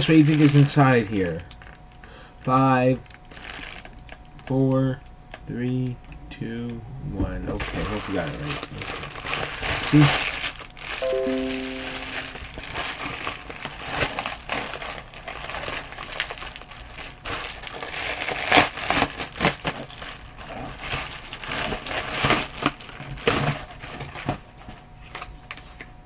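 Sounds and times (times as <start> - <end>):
packaging tearing and crinkling: 3.0 - 4.2, 12.8 - 24.4.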